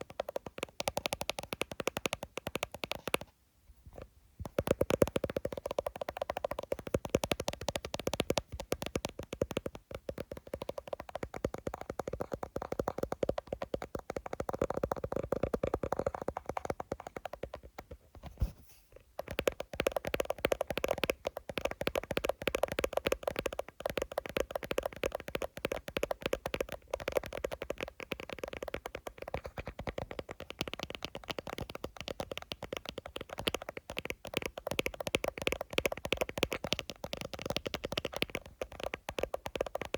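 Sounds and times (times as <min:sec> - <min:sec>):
fingers tapping on phone screen: 0:00.0 - 0:03.3, 0:03.9 - 0:18.5, 0:19.2 - 0:39.9.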